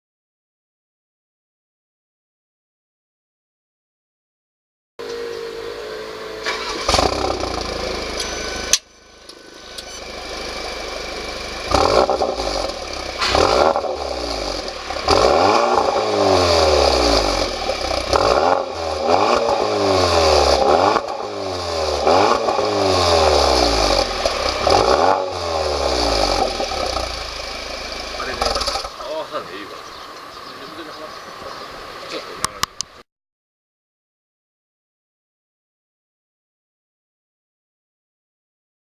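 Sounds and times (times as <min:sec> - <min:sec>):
car engine revving: 0:05.0 - 0:30.0
steady car engine: 0:05.0 - 0:33.0.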